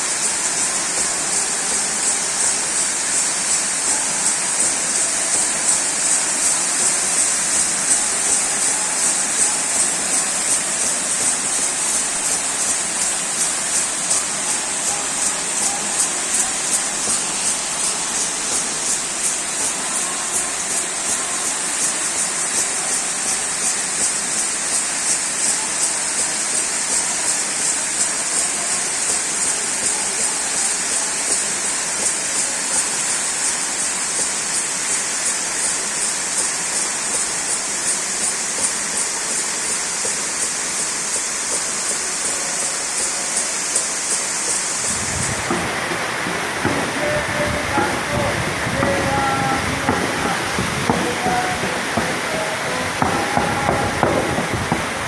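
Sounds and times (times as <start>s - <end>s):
high shaking pulse: 0.0s - 23.4s, 43.3s - 55.0s
waterfall rushing: 0.0s - 55.0s.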